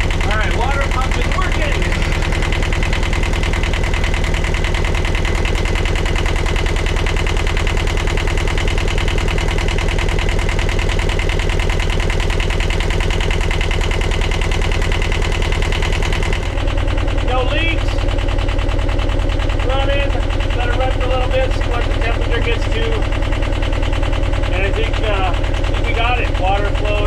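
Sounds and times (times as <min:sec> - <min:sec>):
diesel engine idling: 0:00.0 - 0:27.0.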